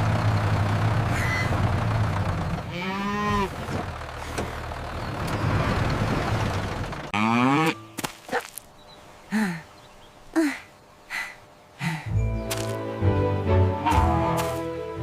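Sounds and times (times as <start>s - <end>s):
tractor engine running: 0.0s - 7.2s
cow mooing: 2.7s - 3.5s, 7.2s - 7.8s.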